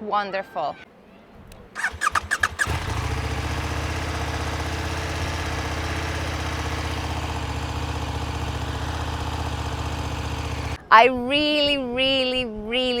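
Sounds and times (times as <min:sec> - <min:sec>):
motorcycle engine idling: 0:01.8 - 0:10.8
starter motor cranking: 0:01.8 - 0:10.8.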